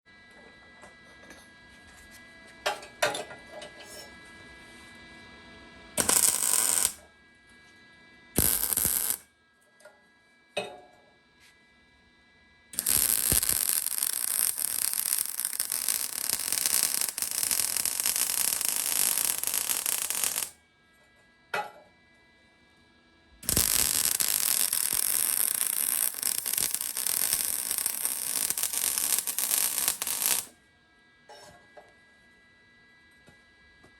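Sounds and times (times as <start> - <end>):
electric arc welding crackle: 6.0 - 7.0, 8.4 - 9.2, 12.8 - 20.6, 23.4 - 30.5.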